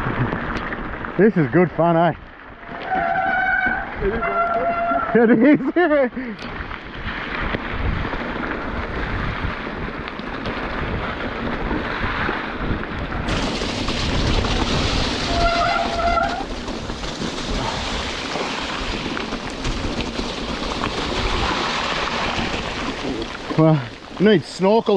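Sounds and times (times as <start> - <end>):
bike tyres rolling on wet trail: 0.0 - 24.9
rain: 0.0 - 24.9
wind buffeting microphone: 6.5 - 24.9.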